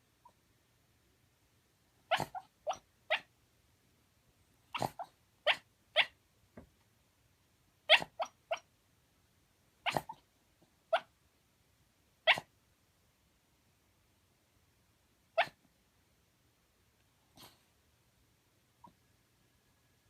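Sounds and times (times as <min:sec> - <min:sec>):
dog woofing and yipping in sleep: 0:00.2 - 0:00.4, 0:02.0 - 0:03.3, 0:04.7 - 0:06.2, 0:07.9 - 0:08.7, 0:09.8 - 0:11.2, 0:12.2 - 0:12.6, 0:15.3 - 0:15.7, 0:17.4 - 0:17.7, 0:18.8 - 0:19.0.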